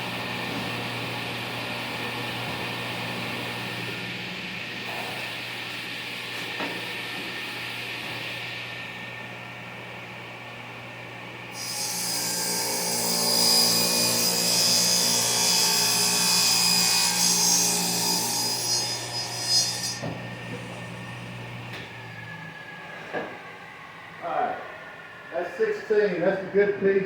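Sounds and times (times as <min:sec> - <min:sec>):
table saw motor hum: 0:11.5 - 0:22.8.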